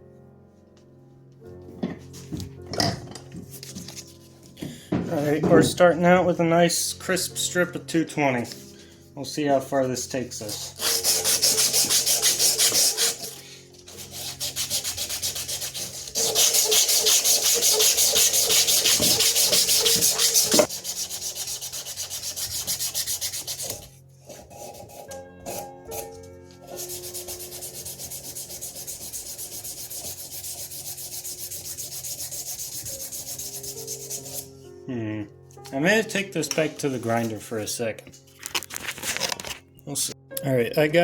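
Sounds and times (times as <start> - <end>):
sandpaper sanding wood: 10.4 - 23.9, 24.5 - 26.1, 26.7 - 34.5.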